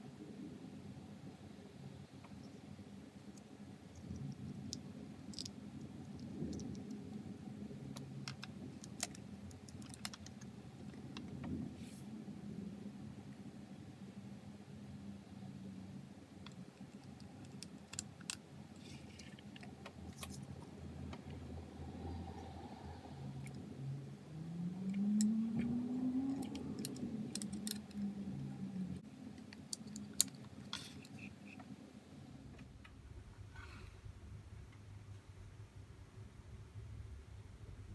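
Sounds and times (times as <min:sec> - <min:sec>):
low steady hum: 0:00.0 - 0:37.9
plastic parts clicking: 0:04.0 - 0:07.0, 0:08.0 - 0:11.3, 0:16.4 - 0:20.4, 0:24.8 - 0:28.1, 0:29.4 - 0:31.6.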